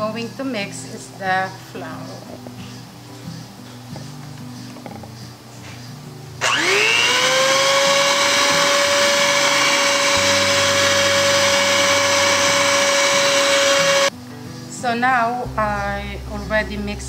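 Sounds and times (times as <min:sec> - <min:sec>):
electric mixer motor whine: 0:06.4 - 0:14.1.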